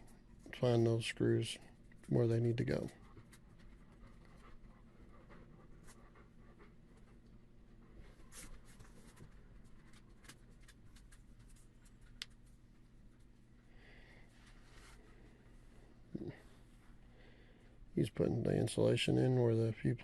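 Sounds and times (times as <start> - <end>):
light ticks and scratches: 1.6 - 13.4.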